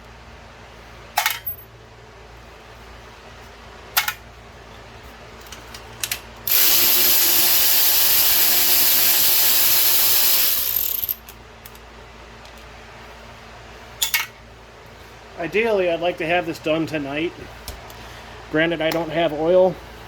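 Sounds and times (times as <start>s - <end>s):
handheld power tool running: 6.5s - 11.2s.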